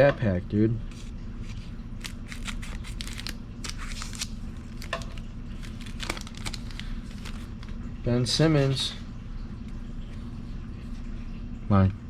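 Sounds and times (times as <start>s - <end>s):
low steady hum: 0.0s - 12.0s
trading cards being handled: 0.9s - 7.8s.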